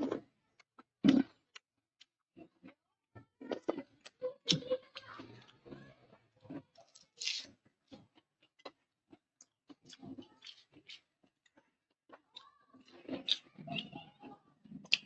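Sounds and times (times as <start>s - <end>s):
chewing and mouth smacks: 6.4s - 15.0s.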